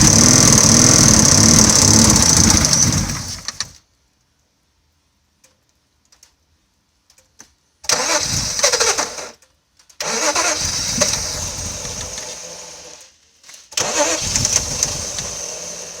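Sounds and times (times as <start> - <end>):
car engine running: 0.0 - 3.7, 13.9 - 16.0
faint clicks: 5.4 - 6.4.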